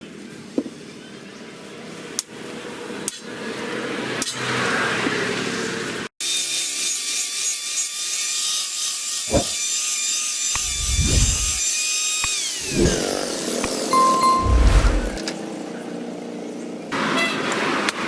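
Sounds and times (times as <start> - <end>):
tool scraping steel: 9.3 - 9.6.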